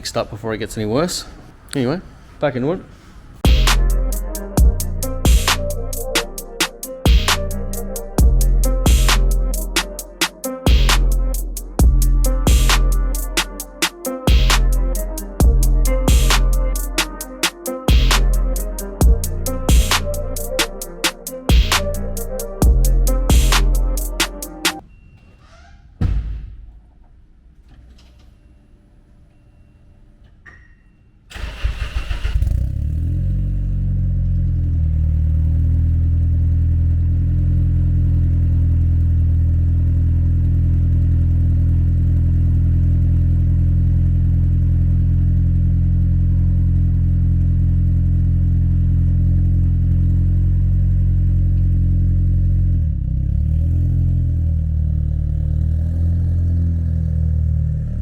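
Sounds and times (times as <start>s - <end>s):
car engine cranking: 31.3s - 36.9s
car engine idling: 31.4s - 58.0s.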